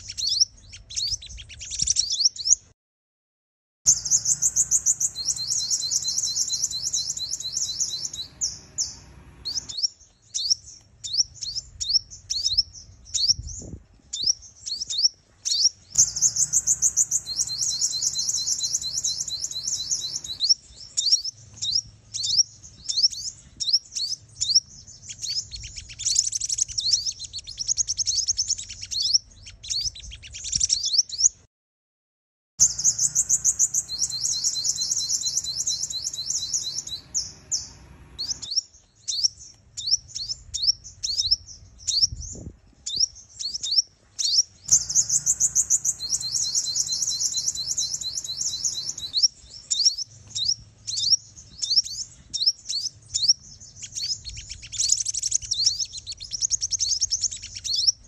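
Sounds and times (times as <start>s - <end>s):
sunbird trilled chirps: 3.9s - 31.3s, 32.6s - 58.0s
bird down-slurred notes: 16.0s - 20.4s, 44.7s - 49.2s.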